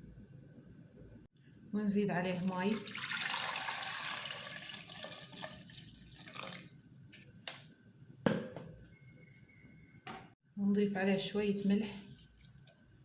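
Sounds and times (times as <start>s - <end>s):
water pouring into a pot: 2.3s - 6.8s.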